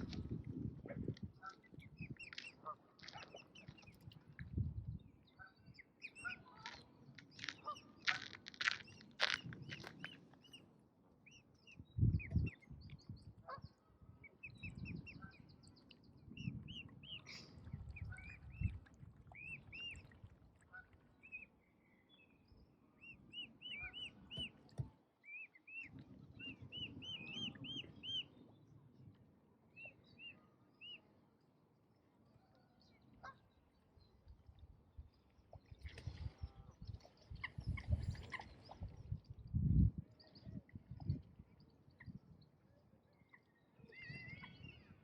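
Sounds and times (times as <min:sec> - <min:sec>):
birds chirping: 0:23.0 - 0:28.5.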